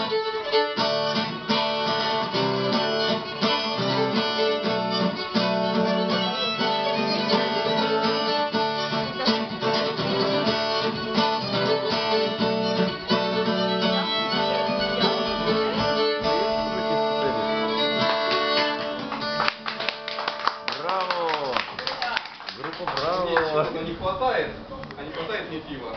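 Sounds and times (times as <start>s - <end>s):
acoustic guitar strumming chords: 0.0s - 20.1s
fiddle melody: 0.0s - 20.7s.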